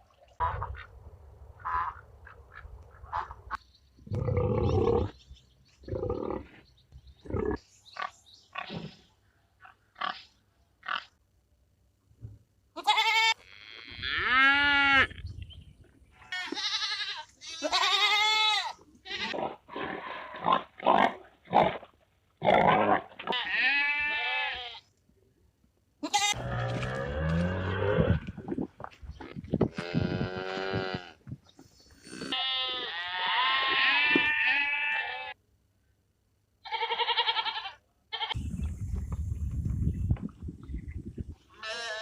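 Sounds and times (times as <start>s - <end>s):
animal grunts: 4.0s - 5.2s, 5.9s - 6.6s, 7.2s - 9.0s
wavering bleats: 12.8s - 15.1s, 16.3s - 19.4s, 22.5s - 24.8s, 26.0s - 28.3s, 32.0s - 35.4s, 36.6s - 38.4s, 41.5s - 42.0s.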